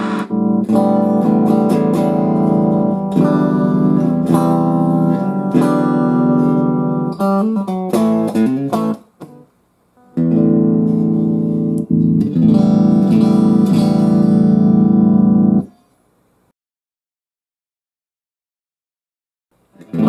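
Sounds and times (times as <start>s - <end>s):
electric guitar chords through amp: 0.0s - 9.4s, 10.0s - 15.7s.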